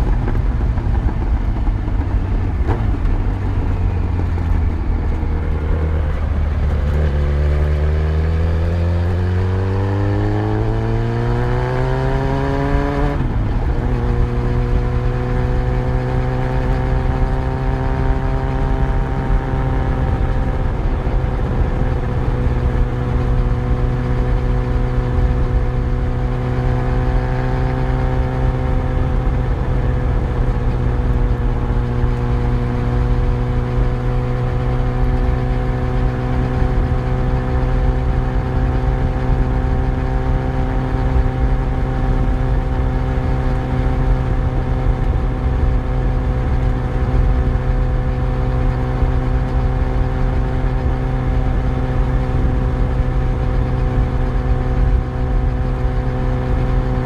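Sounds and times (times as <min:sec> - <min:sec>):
motorcycle engine cruising: 0:00.0 - 0:57.0.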